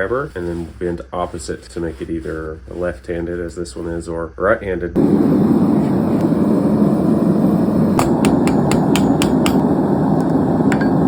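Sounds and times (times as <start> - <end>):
hammer striking steel on anvil: 8.0 - 9.7, 10.7 - 11.0.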